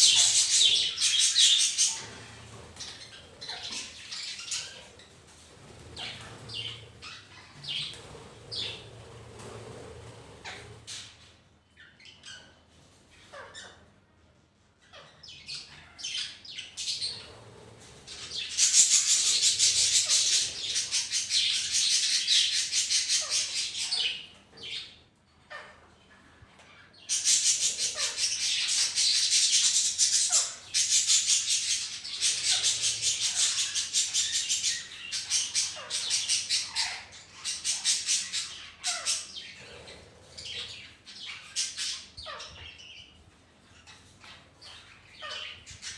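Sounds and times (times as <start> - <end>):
budgerigar flock chattering: 0.0 - 5.0, 18.1 - 24.9, 27.0 - 43.1, 43.9 - 45.9.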